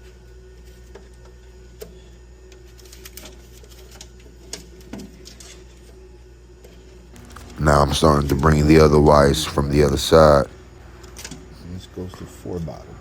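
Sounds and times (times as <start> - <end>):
steady low hum: 7.2 - 10.6.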